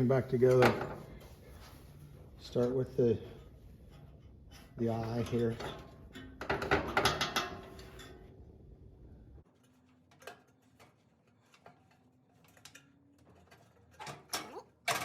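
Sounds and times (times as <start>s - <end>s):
low hum: 7.8s - 9.4s.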